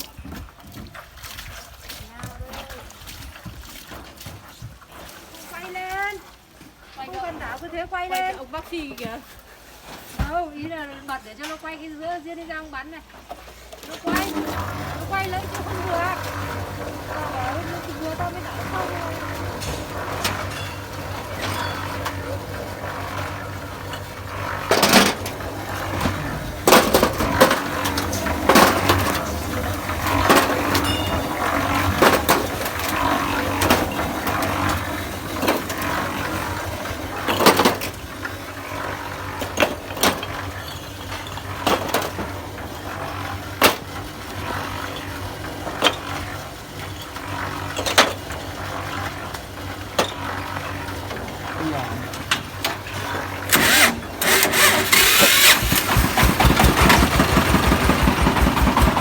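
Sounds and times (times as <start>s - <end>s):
concrete mixer motor hum: 13.1s - 59.0s
sharp clanks and knocks: 30.1s - 32.8s.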